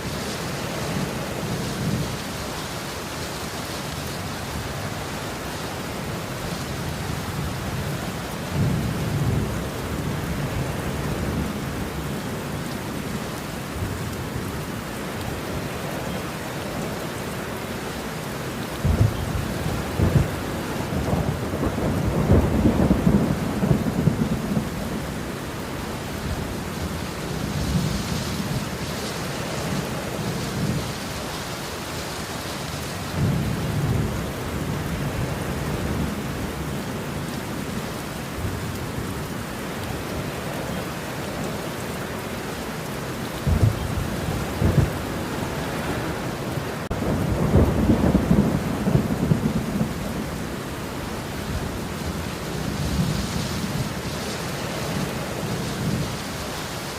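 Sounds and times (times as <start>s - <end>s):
steady rain: 0.0s - 56.9s
rolling thunder: 18.8s - 25.3s, 43.4s - 45.2s, 46.8s - 50.6s.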